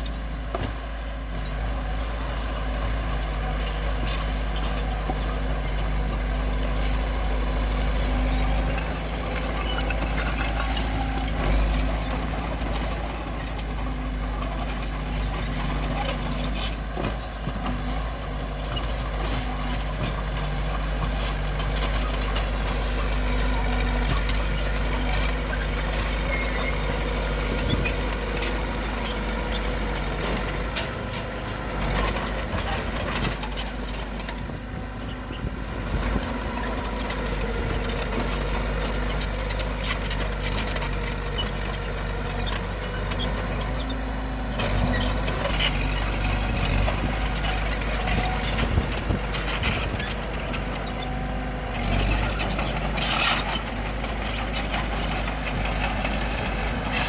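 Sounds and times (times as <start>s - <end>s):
bulldozer diesel engine running: 0.0s - 57.0s
metallic clanking of tracks and rocks: 0.0s - 57.0s.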